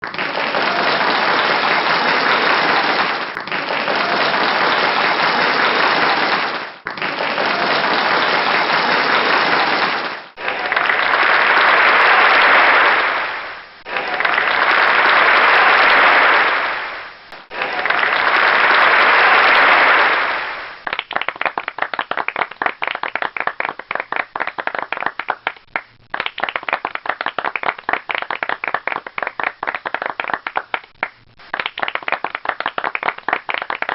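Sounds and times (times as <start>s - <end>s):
crowd applause: 0.0s - 33.9s
thin clapping: 17.3s - 33.9s.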